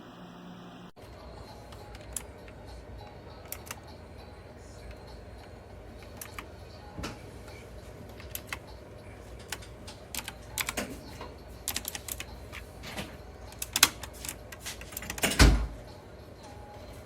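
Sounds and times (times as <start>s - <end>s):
clicky keyboard keystrokes: 8.2s - 8.6s, 9.4s - 11.0s, 11.7s - 12.6s.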